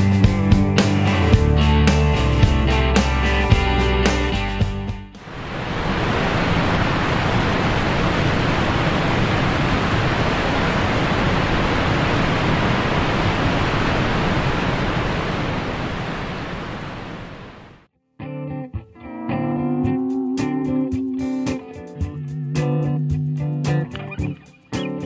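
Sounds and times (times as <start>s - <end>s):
waterfall rushing: 5.2s - 17.8s.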